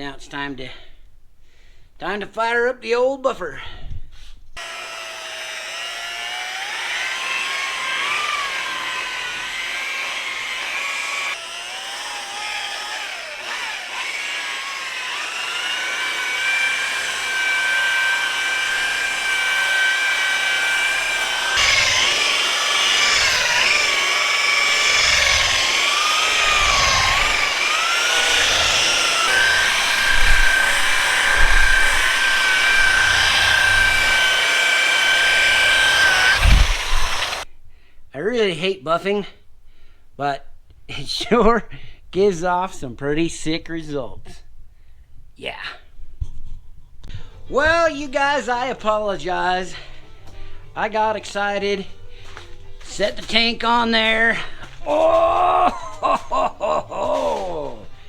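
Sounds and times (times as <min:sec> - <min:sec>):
electric paint buffer motor whine: 0:04.6 - 0:37.5.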